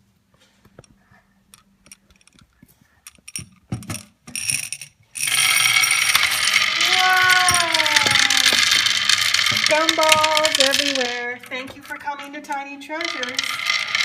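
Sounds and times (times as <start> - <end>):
gumballs rattling down plastic run: 4.4 - 14.0.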